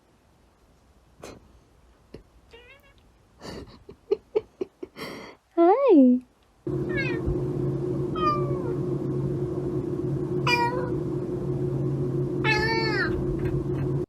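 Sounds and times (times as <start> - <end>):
cat meowing: 2.5 - 3.0, 6.9 - 7.2, 8.2 - 8.7, 10.4 - 10.9, 12.4 - 13.2
low hum: 6.6 - 14.0.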